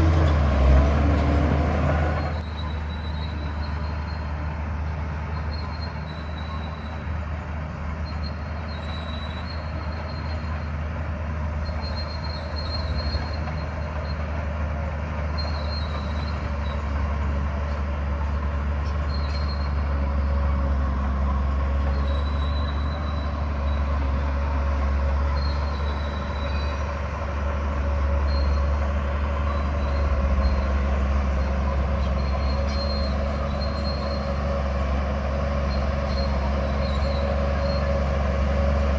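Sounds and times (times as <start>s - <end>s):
bulldozer diesel drone: 0.0s - 38.9s
steel tracks squeaking: 11.5s - 14.5s, 15.1s - 38.9s.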